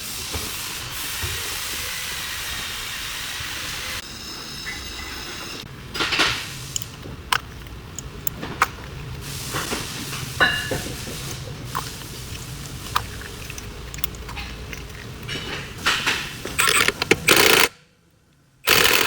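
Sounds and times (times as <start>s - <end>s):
steady hiss: 0.0s - 16.6s
sharp clicks and knocks: 6.0s - 9.8s, 10.4s - 17.7s.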